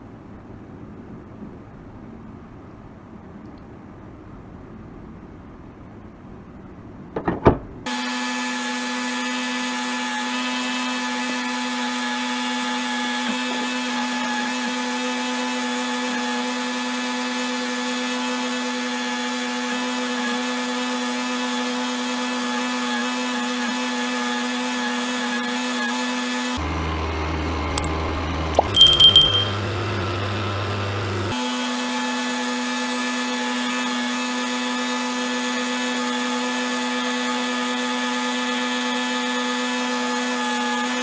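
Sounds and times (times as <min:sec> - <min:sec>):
power tool motor humming: 0:07.9 - 0:41.0
power tool switch clicks: 0:27.8 - 0:28.0.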